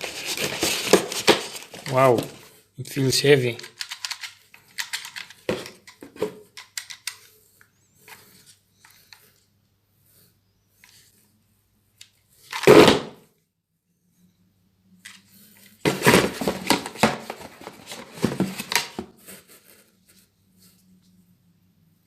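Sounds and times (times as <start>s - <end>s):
pistol clicks and rattles: 3.6s - 6.0s, 6.6s - 7.2s
packaging rustling knock: 15.9s - 19.1s.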